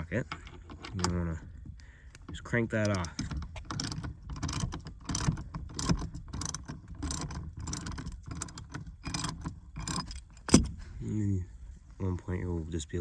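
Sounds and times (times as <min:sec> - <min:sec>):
socket ratchet clicking: 0:02.2 - 0:10.7.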